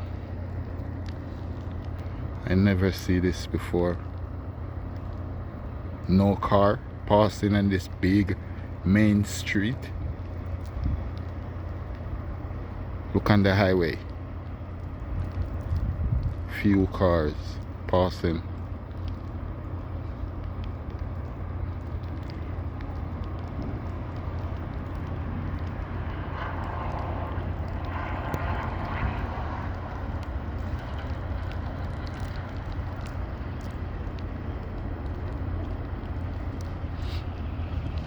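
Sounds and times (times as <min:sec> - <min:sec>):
wind rumble on microphone: 0:00.0 - 0:38.0
vehicle passing with tyre hiss: 0:23.7 - 0:33.6, 0:36.7 - 0:38.0.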